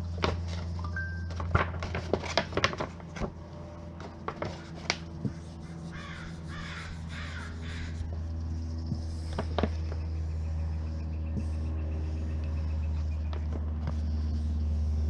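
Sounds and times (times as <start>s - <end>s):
low hum: 0.0s - 15.0s
crow cawing: 5.9s - 8.0s.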